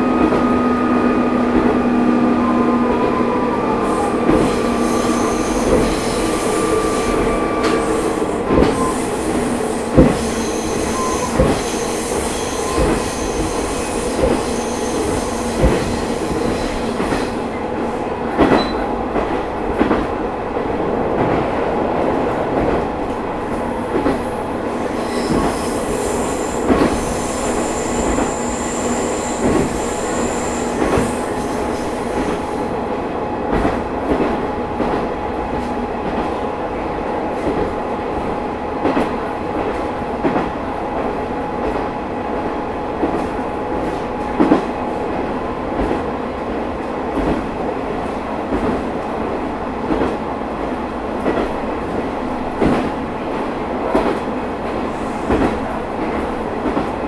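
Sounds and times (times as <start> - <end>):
railcar engine and running noise: 0.0 - 57.0
high-pitched wheel squeal: 10.3 - 15.6.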